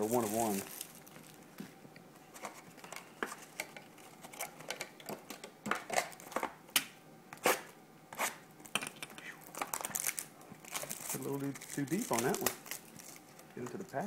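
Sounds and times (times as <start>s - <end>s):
card packaging clicks and scrapes: 2.3s - 6.6s, 7.3s - 14.0s.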